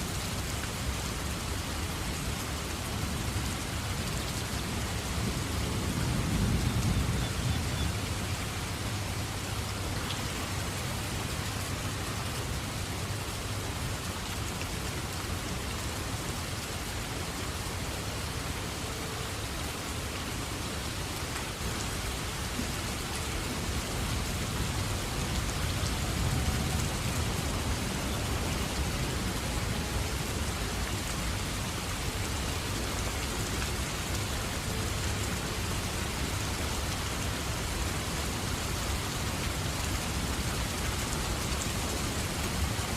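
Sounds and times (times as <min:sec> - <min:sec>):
steady rain falling: 0:00.0 - 0:42.9
low rumble of thunder: 0:05.1 - 0:09.0.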